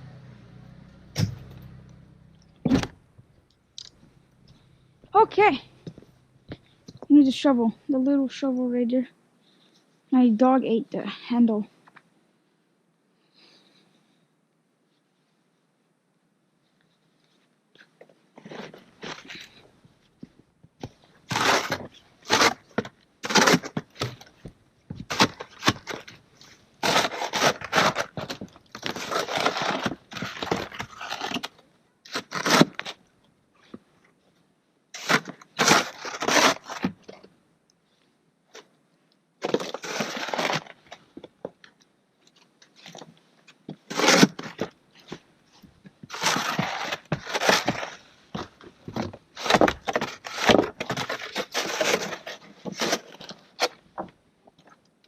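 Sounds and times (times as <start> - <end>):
snow shovel scraping snow: 21.3 - 23.8, 26.8 - 31.4, 35.0 - 36.9, 39.4 - 40.7, 43.9 - 44.6, 46.1 - 48.0, 49.4 - 53.2.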